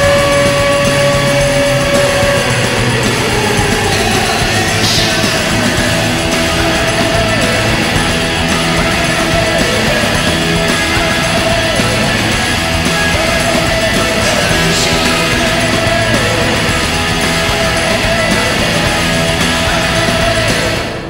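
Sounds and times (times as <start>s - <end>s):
loud rock music with singing: 0.0s - 21.0s.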